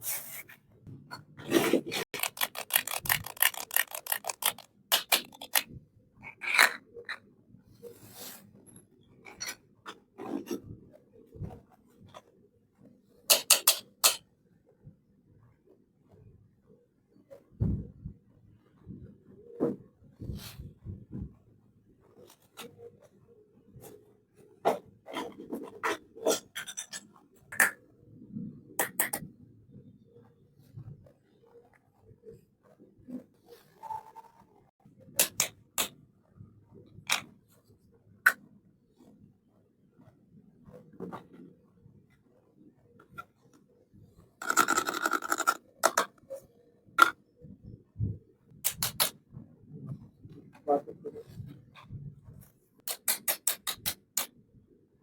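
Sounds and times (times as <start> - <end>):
packaging scraping and rubbing: 1.4 - 5.7, 44.4 - 46.2
toy pieces rattling: 2.1 - 5.6, 44.4 - 46.1
toy pieces clicking and tapping: 2.1 - 5.7, 13.3 - 14.2, 35.2 - 35.9, 44.4 - 46.2, 48.7 - 49.1, 52.9 - 54.3.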